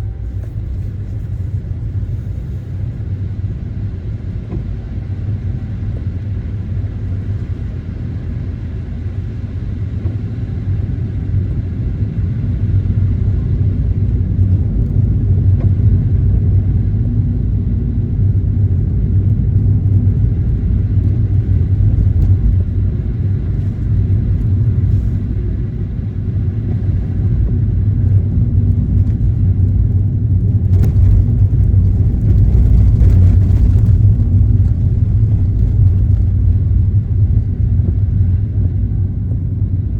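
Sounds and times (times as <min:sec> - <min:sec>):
car engine and tyres rumbling: 0:00.0 - 0:39.9.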